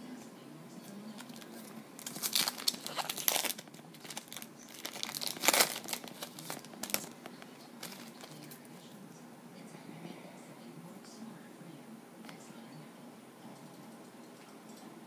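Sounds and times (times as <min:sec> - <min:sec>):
wrapper crinkling and tearing: 0:01.2 - 0:08.6.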